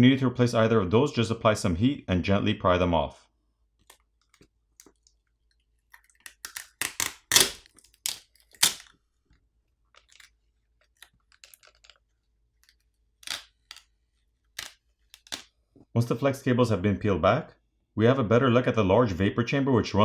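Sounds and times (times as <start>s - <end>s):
adhesive cables peeling crackles: 5.9s - 9.0s, 12.6s - 13.8s, 14.6s - 15.5s.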